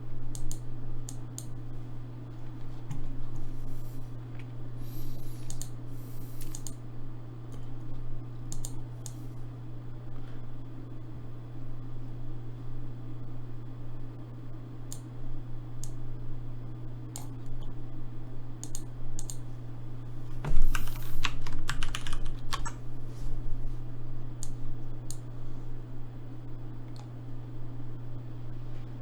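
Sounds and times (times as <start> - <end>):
low electrical hum: 0.0 - 29.0
computer keyboard typing: 4.9 - 6.8, 20.4 - 22.8.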